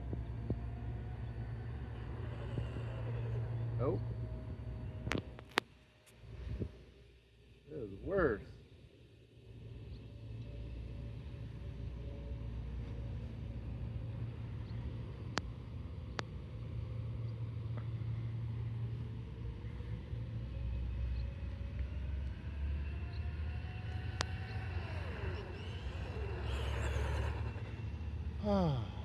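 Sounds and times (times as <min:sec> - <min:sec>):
low rumble: 0:00.0 - 0:05.6, 0:09.6 - 0:29.0
electric motor whining: 0:21.0 - 0:28.4.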